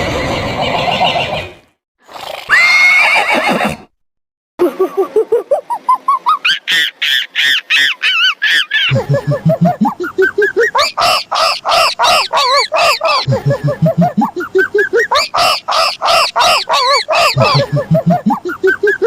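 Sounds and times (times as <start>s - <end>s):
horse whinnying: 2.3s - 3.9s.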